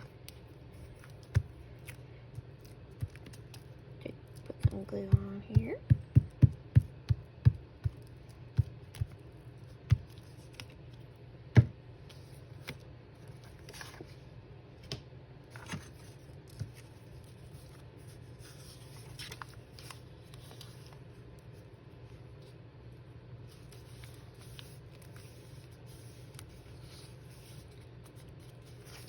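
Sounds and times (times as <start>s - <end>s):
paper rustling: 12.1s - 14.2s, 15.5s - 21.6s, 23.4s - 29.0s.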